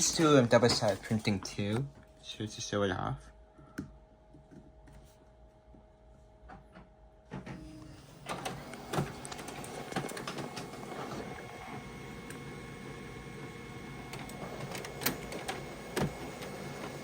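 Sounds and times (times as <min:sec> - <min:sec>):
printer clicks and clunks: 0:07.3 - 0:17.0
printer mechanical whir: 0:07.4 - 0:17.0.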